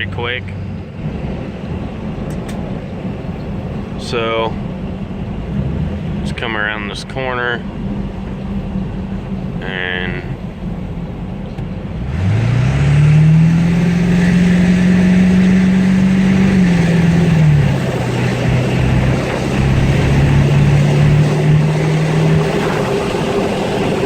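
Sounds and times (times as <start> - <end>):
diesel pickup accelerating: 0.0 - 24.0.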